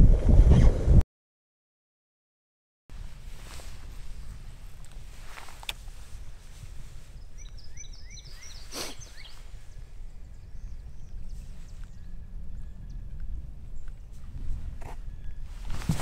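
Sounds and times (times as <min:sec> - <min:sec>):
wind on microphone: 0:00.0 - 0:01.0, 0:02.9 - 0:16.0
bird chirps: 0:07.0 - 0:14.3.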